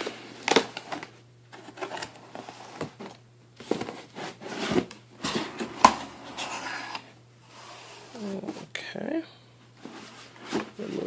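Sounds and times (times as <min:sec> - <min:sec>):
cardboard packaging rustling: 0:00.0 - 0:07.1
low electrical hum: 0:00.0 - 0:11.0.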